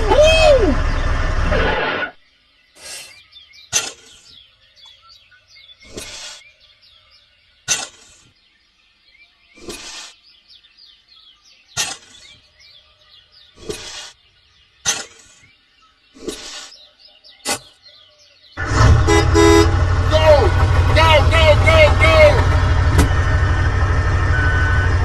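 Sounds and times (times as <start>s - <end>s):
birds chirping: 0.0s - 25.0s
sharp knock: 22.9s - 23.2s.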